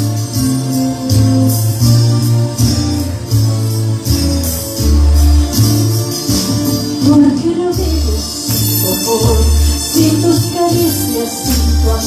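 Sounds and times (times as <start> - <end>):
percussion beat: 0.0 - 12.0
sustained bass notes: 0.0 - 12.0.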